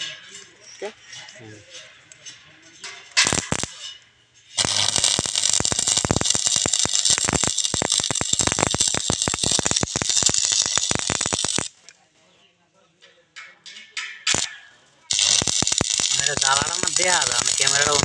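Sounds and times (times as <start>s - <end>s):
welding arc crackling: 3.1s - 3.9s, 4.6s - 11.8s, 14.3s - 14.5s, 15.1s - 18.0s.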